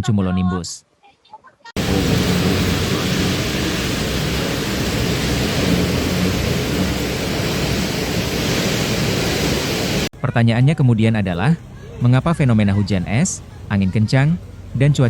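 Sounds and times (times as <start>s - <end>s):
heavy rain: 1.8s - 10.1s
strong wind: 1.8s - 10.1s.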